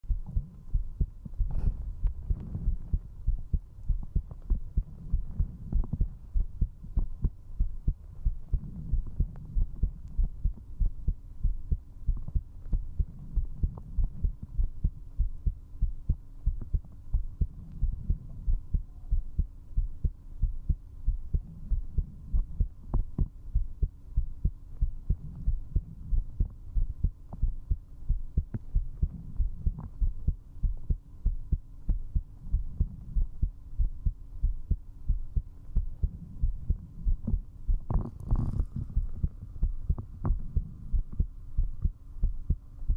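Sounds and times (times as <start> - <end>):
faint steady hum: 0.0 - 42.9
heartbeat double thumps: 0.0 - 42.9.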